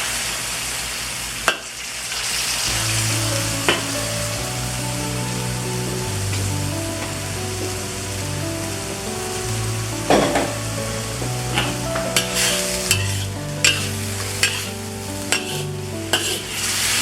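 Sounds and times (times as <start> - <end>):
oil sizzling in a wok: 1.7 - 17.0
spatula scraping a wok: 12.1 - 16.6.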